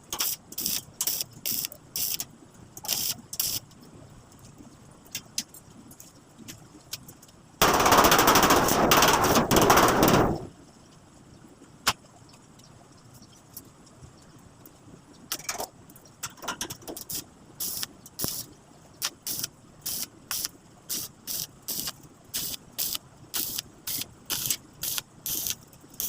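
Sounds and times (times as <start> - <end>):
welding arc crackling: 0.1 - 3.6, 7.6 - 10.2, 17.0 - 26.0.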